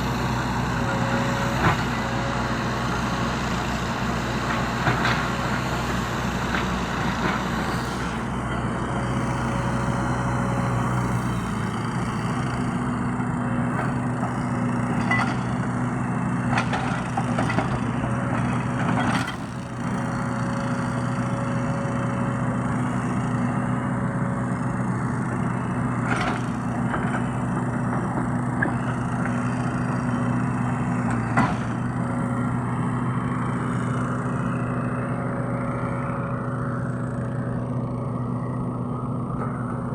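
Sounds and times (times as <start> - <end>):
excavator diesel engine running: 0.0 - 39.9.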